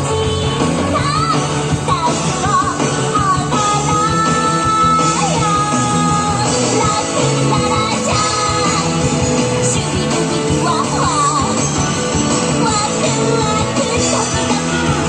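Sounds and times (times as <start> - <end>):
person singing: 0.0 - 15.0
pop-rock music: 0.0 - 15.0.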